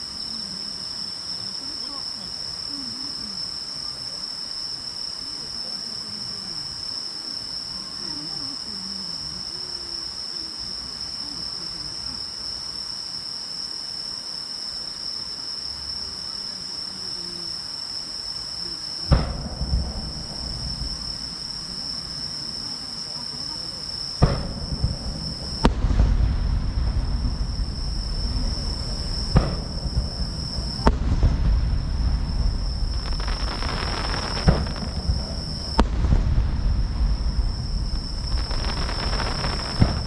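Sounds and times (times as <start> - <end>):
insects chirring: 0.0 - 40.0
faint voices murmuring: 18.6 - 36.4
firework shell boom: 19.1 - 21.8, 24.2 - 40.0
low rumbling echo: 19.1 - 22.3, 24.2 - 40.0.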